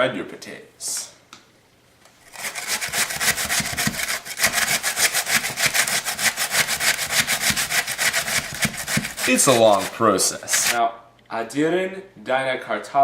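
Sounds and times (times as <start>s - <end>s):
potato grated on metal grater: 2.2s - 10.8s.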